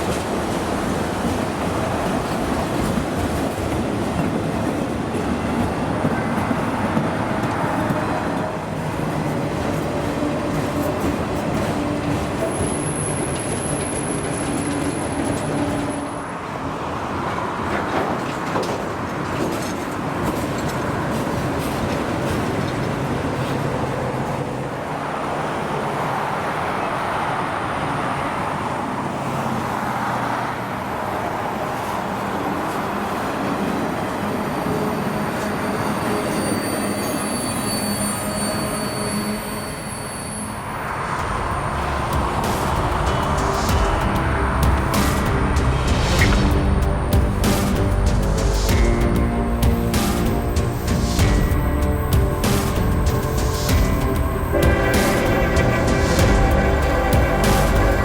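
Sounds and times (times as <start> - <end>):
high squeal: 34.1 - 45.4, 50.3 - 58.0
freight train wheels rattling: 41.2 - 58.0.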